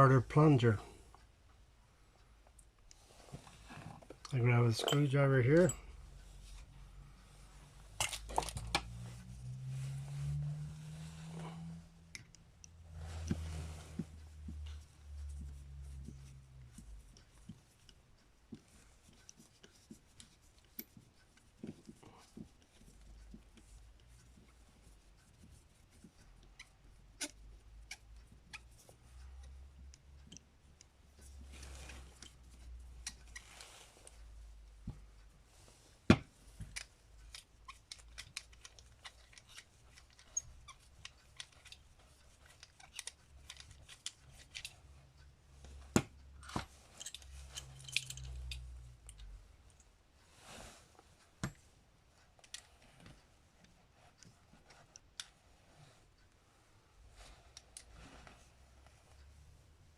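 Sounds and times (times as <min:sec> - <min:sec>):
small metal parts clicking: 0:36.6 - 0:44.8, 0:46.4 - 0:49.3.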